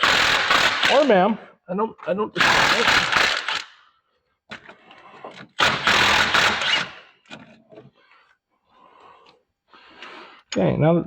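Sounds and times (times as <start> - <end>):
impact wrench burst: 0.0 - 1.2, 2.4 - 3.8, 5.6 - 7.2.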